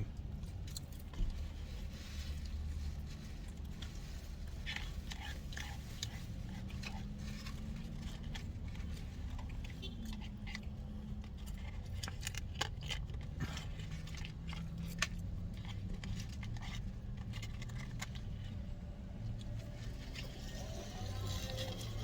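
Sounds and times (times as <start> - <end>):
low hum inside parked car: 0.0 - 22.0.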